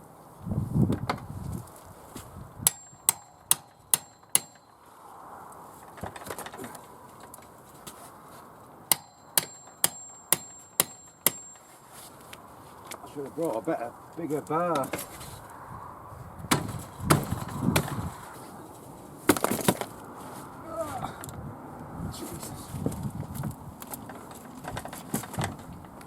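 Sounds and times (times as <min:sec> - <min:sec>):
hammer striking metal: 0:02.6 - 0:04.9, 0:08.9 - 0:11.8, 0:16.5 - 0:17.9
dull low thump: 0:16.5 - 0:18.2.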